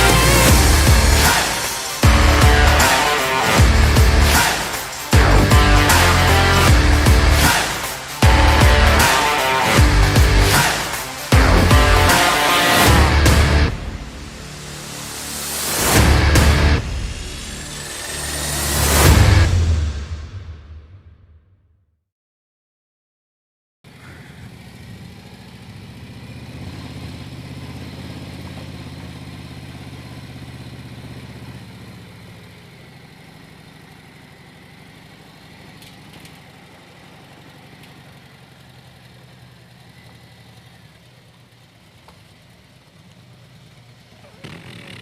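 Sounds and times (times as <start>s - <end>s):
motorcycle engine idling: 0.0s - 12.2s, 23.9s - 45.0s.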